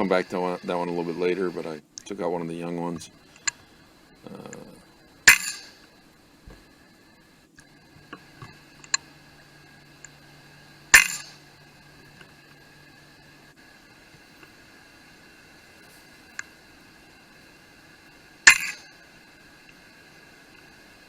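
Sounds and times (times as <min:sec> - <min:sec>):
faint steady hum: 0:00.0 - 0:21.0
air rifle shots: 0:05.2 - 0:05.8, 0:10.9 - 0:11.4
small clicks: 0:07.4 - 0:10.3.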